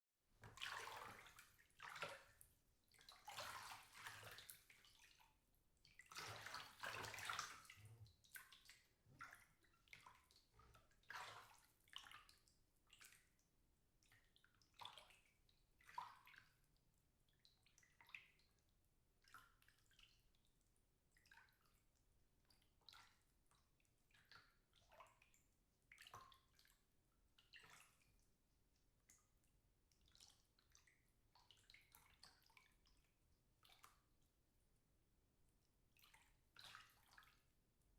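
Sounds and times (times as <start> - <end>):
water sloshing in a bathtub: 0.3 - 37.9.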